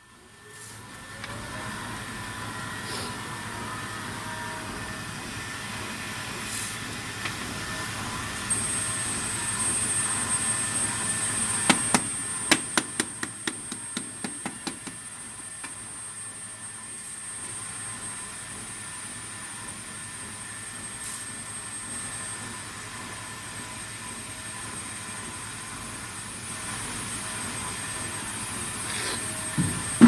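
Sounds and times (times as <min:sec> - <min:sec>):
drilling machine humming: 0:01.2 - 0:16.0.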